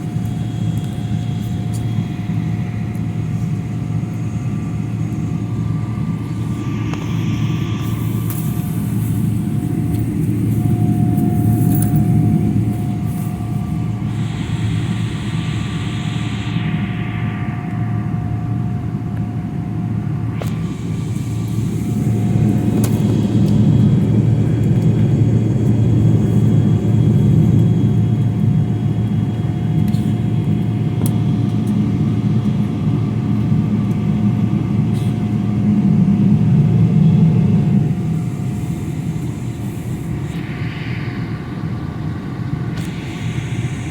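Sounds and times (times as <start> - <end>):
engine and airflow rumble: 0.0 - 43.9
thin steady whine: 0.0 - 43.9.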